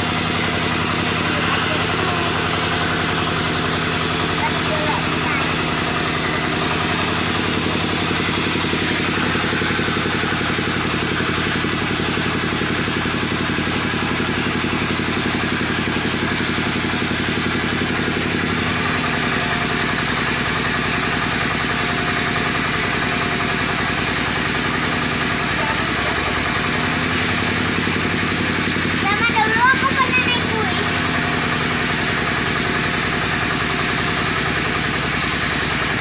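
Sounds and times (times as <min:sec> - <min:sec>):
saw engine running: 0:00.0 - 0:36.0.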